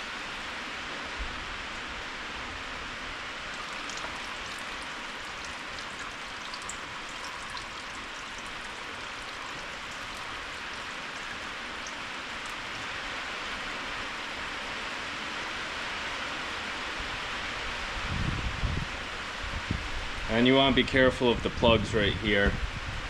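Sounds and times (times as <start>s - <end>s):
rain falling: 0.0s - 18.0s
faint dripping: 3.5s - 13.8s.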